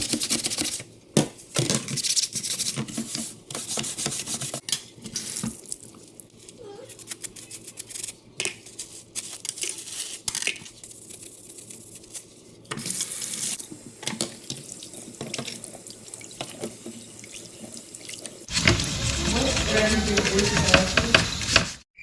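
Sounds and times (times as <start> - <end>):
water running from tap into sink: 14.0 - 21.6
dishes knocking and scraping: 18.5 - 21.8.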